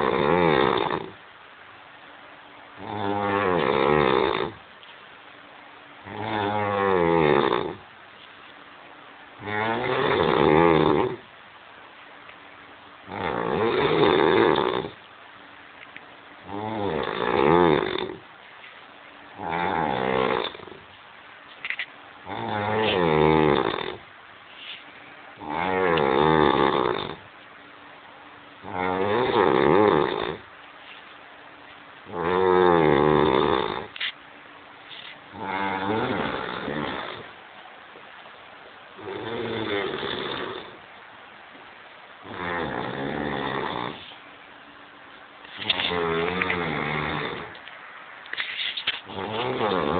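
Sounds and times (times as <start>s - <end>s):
man snoring heavily: 0.0s - 1.2s, 2.8s - 4.6s, 6.0s - 7.8s, 9.4s - 11.2s, 13.1s - 15.0s, 16.4s - 18.2s, 19.4s - 20.8s, 22.2s - 24.1s, 25.4s - 27.2s, 28.6s - 30.5s, 32.1s - 34.0s, 35.3s - 37.3s, 39.0s - 40.8s, 42.2s - 44.1s, 45.7s - 47.6s, 49.1s - 49.9s
quiet breaths: 42.2s - 44.4s.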